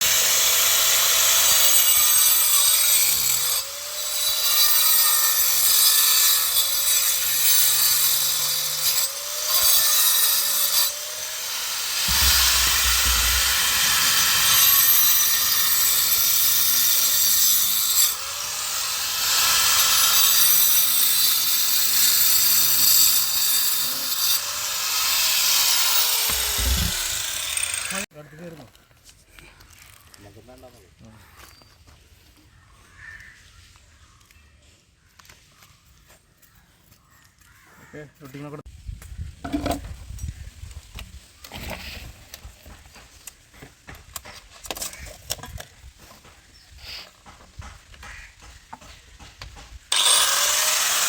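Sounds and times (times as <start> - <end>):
power tool cutting: 0.0 - 28.1, 49.9 - 51.0.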